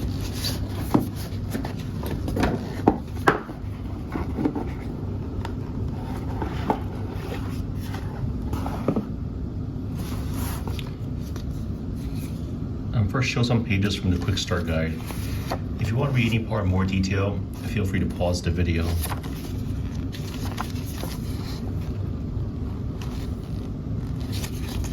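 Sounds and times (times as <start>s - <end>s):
packaging knocks and scrapes: 0.0s - 9.1s
low background rumble: 0.0s - 24.9s.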